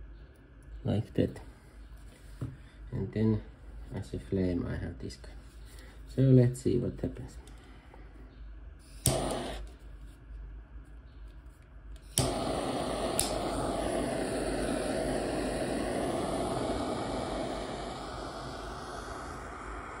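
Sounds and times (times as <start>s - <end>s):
torch flame hissing: 8.8s - 9.8s, 12.0s - 20.0s
torch igniter click: 8.8s - 9.8s, 12.0s - 17.8s.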